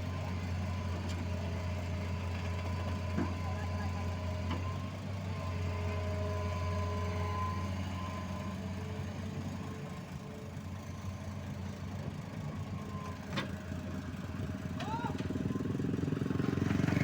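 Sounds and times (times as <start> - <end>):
diesel engine idling: 8.2 - 17.0.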